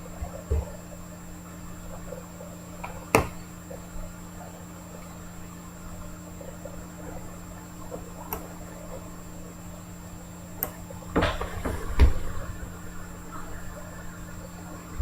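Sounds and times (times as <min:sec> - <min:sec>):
knocks and rustles: 0:11.1 - 0:13.8.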